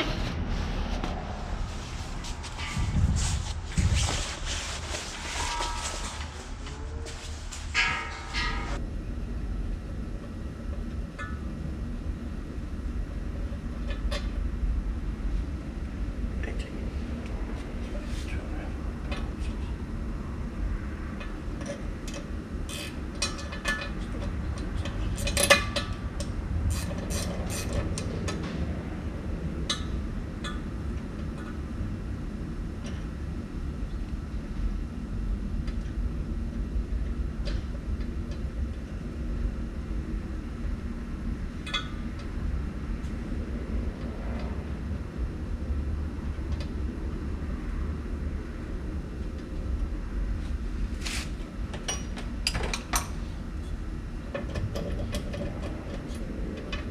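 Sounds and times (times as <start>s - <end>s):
low rumble: 0.0s - 10.0s.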